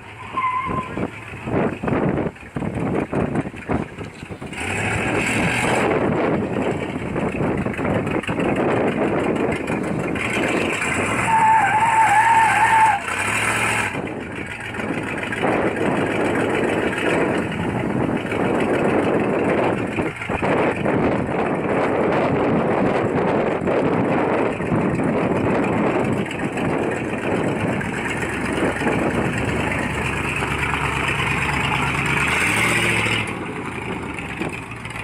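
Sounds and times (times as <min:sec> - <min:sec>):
pickup truck engine and road noise: 0:00.0 - 0:35.0
high wavering squeal: 0:00.1 - 0:01.1, 0:10.8 - 0:13.2.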